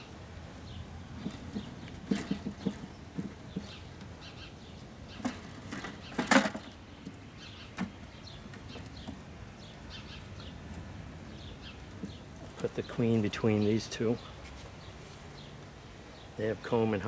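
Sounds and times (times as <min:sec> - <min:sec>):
small birds chirping: 0:00.0 - 0:17.0
scraping rattle: 0:01.2 - 0:03.8.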